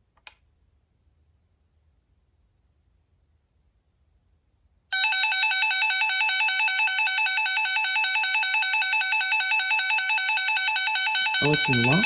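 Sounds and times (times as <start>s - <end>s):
warbling alert siren through radio: 6.0s - 12.0s.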